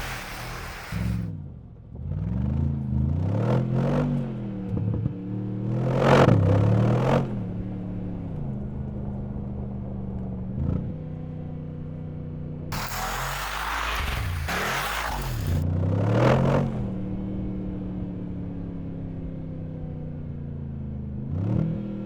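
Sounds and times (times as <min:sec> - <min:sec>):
car engine revving: 0:00.0 - 0:01.3, 0:12.7 - 0:17.0.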